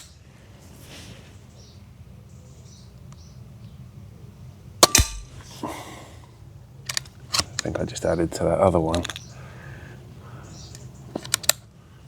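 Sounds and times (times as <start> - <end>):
air pistol shot crack: 4.8 - 5.5.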